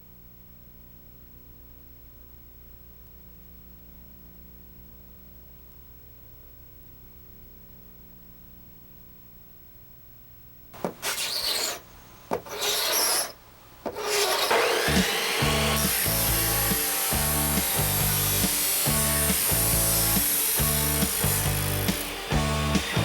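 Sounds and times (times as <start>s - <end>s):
faint hum: 0.0s - 10.9s
pulsing bass line on a beat: 15.4s - 23.0s.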